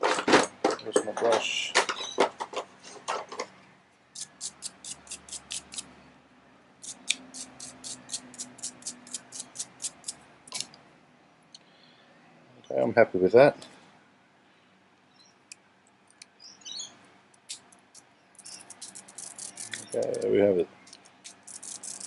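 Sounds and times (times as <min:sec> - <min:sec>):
brush scrubbing metal: 0:18.4 - 0:20.2, 0:21.2 - 0:22.0.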